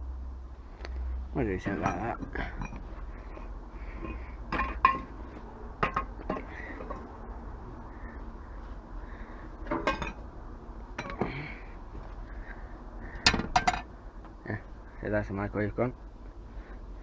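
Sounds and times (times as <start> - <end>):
scrap metal parts clinking: 1.5 - 7.2, 9.7 - 10.2, 11.0 - 11.6, 13.2 - 13.9.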